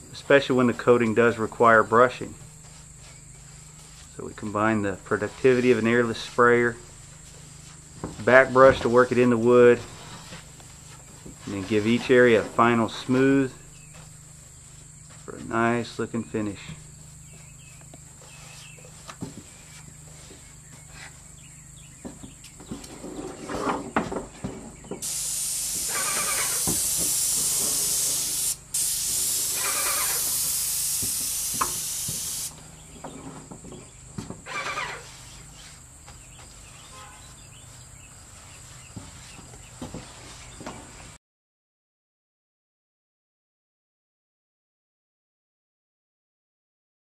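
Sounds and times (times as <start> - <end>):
crickets chirring: 0.0 - 39.8
paint sprayer hissing: 25.0 - 32.7.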